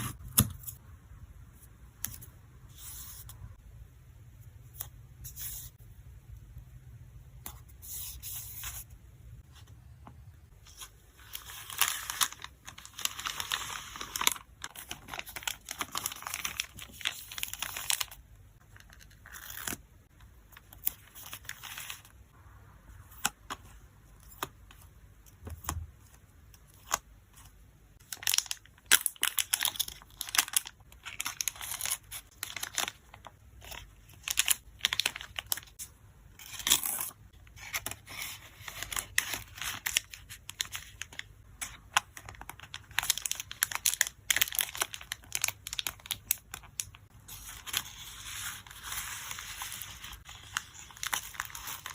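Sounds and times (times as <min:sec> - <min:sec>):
packing materials crinkling and rustling: 0:10.7 - 0:19.8, 0:28.0 - 0:35.8, 0:36.4 - 0:51.9.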